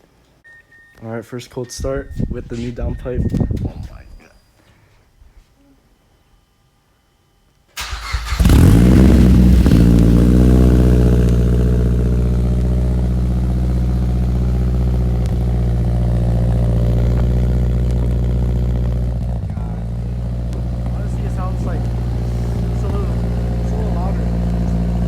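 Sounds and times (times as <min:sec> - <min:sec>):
car engine starting and idling: 0:07.8 - 0:25.0.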